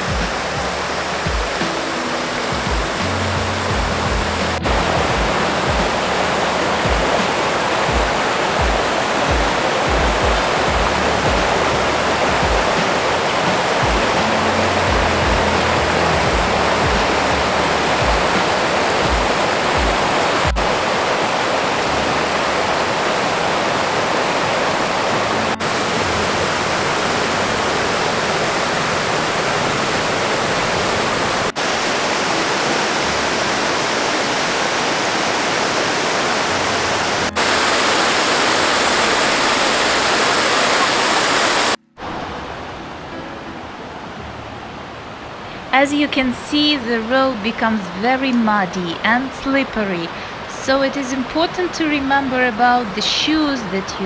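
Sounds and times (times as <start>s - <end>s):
background music with bass beat: 0.0s - 20.8s
water rushing over rocks: 0.0s - 54.0s.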